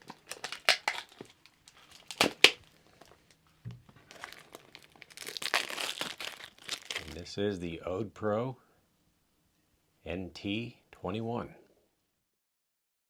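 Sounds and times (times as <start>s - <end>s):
plastic shrink wrap tearing: 0.0s - 3.1s, 4.0s - 7.3s.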